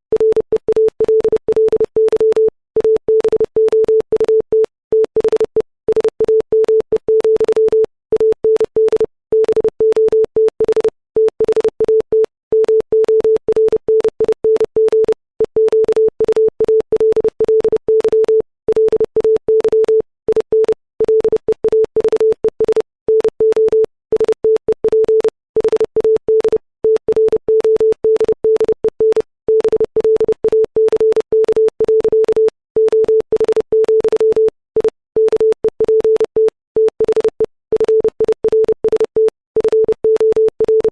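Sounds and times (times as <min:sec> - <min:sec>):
morse code tone: 0:12.6 - 0:40.9.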